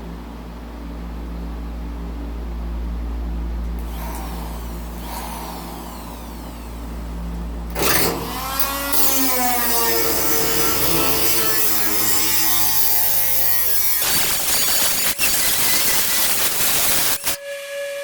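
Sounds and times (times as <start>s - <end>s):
steady low hum: 0.0s - 17.4s
cut-off wheel cutting sheet metal: 3.8s - 7.0s, 7.7s - 17.5s.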